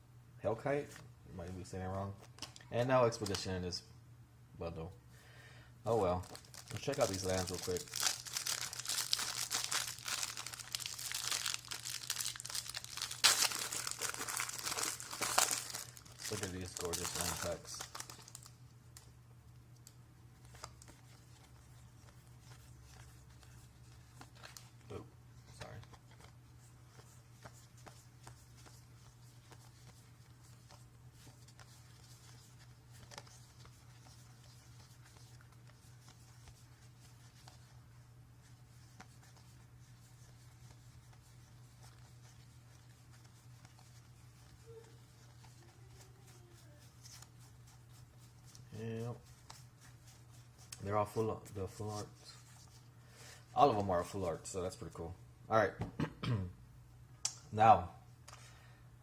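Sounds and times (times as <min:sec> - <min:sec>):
low steady hum: 0:00.0 - 0:59.0
plastic packaging crinkling: 0:06.2 - 0:19.1.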